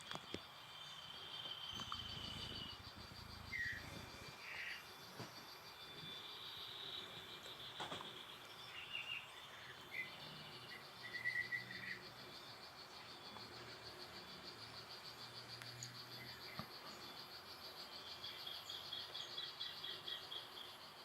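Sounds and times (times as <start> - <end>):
reversed cricket trill: 1.1 - 5.2.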